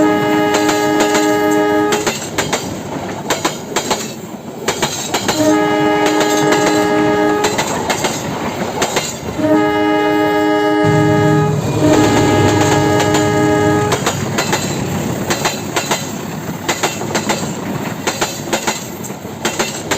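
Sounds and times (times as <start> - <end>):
train horn blasts: 0.0 - 2.2, 5.4 - 7.7, 9.4 - 14.8
train wheels clicking on rail joints: 0.5 - 9.4, 11.5 - 19.9
low hum: 10.8 - 15.1.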